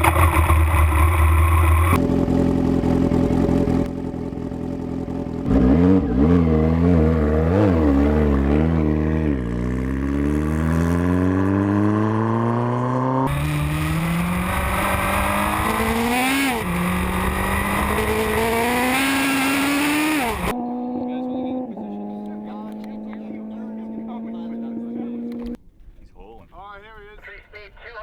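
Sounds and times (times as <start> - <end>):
motorcycle engine accelerating hard: 0.0 - 25.6
motorcycle gear upshifts: 13.3 - 21.1, 24.6 - 25.6.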